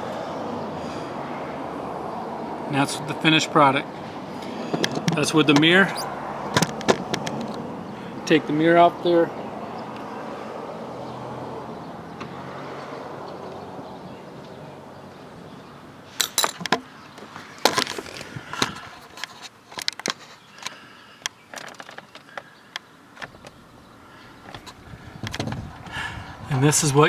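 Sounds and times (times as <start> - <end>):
tools clicking and knocking: 4.7 - 7.6, 16.2 - 16.9, 19.2 - 22.4.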